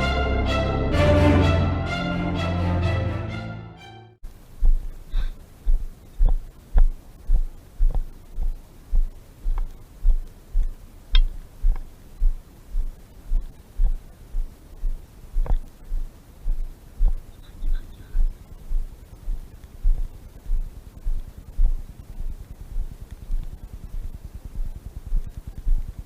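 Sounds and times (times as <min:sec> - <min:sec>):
faint clicks: 0:04.6 - 0:26.0
footfall thuds on microphone: 0:05.7 - 0:10.8.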